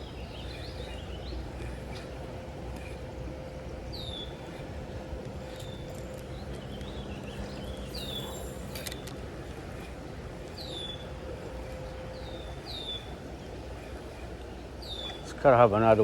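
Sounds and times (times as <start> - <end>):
songbird calling: 0.0 - 2.2, 3.8 - 4.6, 5.4 - 9.1, 10.5 - 11.2, 11.9 - 15.4
creek water running: 0.0 - 16.0.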